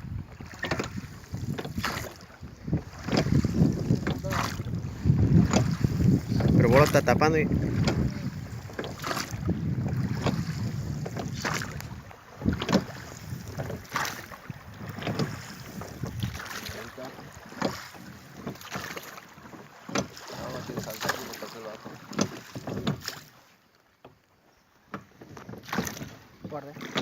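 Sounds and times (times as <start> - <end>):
wind rumble on microphone: 0.0 - 17.5.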